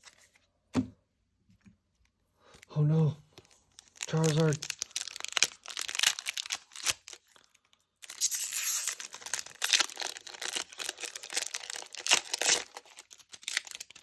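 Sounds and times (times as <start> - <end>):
foil wrapper tearing and crinkling: 3.7 - 14.0.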